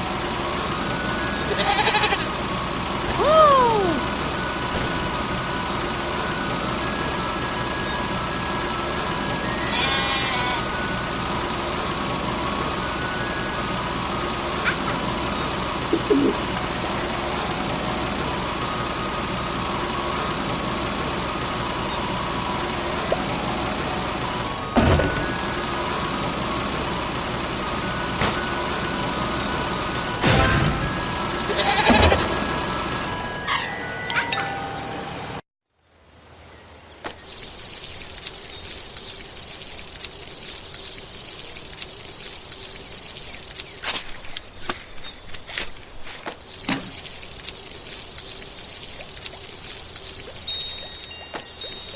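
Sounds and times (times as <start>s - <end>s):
cartoon engine idling: 0.0s - 33.6s, 46.4s - 51.9s
rain or spraying water hiss: 37.1s - 45.1s, 45.8s - 51.9s
sharp splashes: 46.1s - 51.9s.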